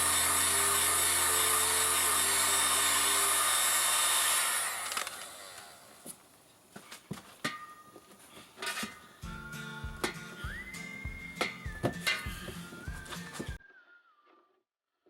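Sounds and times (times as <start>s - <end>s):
heat gun blowing hot air: 0.0s - 6.0s.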